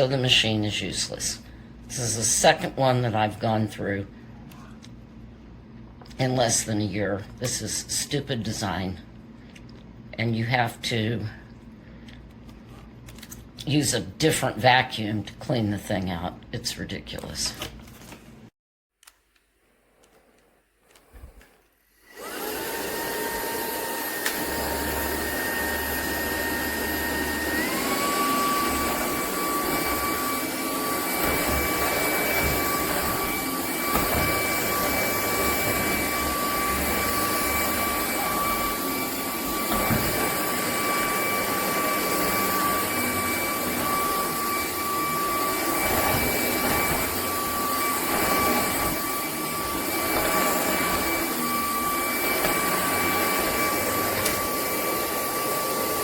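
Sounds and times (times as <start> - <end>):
vacuum cleaner motor whining: 20.9 - 56.0.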